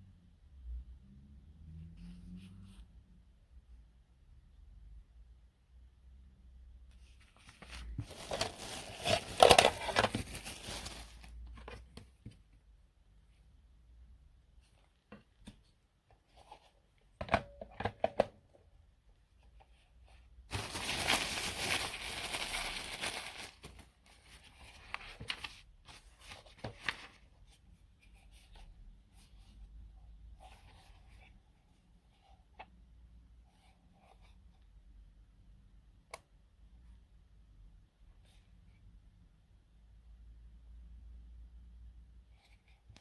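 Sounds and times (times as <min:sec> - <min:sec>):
rustling or tearing: 0:07.4 - 0:11.4, 0:20.5 - 0:23.9.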